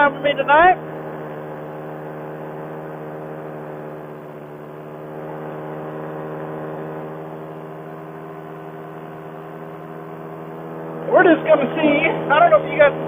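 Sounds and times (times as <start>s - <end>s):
paramotor engine droning: 0.0s - 13.0s.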